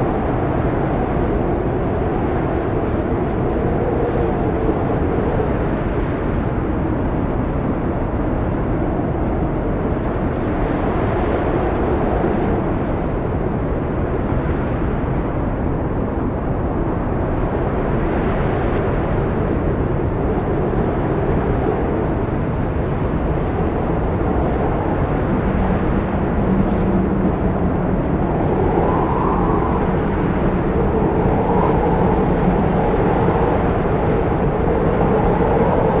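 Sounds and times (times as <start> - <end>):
howling gusty wind: 0.0 - 36.0.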